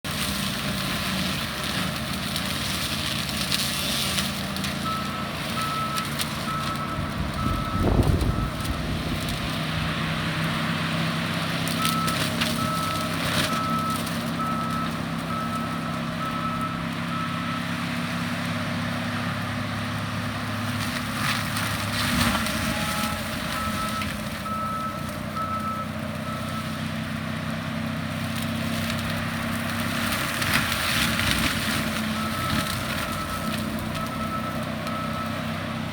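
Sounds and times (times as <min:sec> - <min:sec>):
skid steer running: 0:00.0 - 0:35.9
reversing alarm beeps: 0:04.8 - 0:08.9, 0:11.8 - 0:17.7, 0:22.7 - 0:26.8, 0:32.1 - 0:35.6.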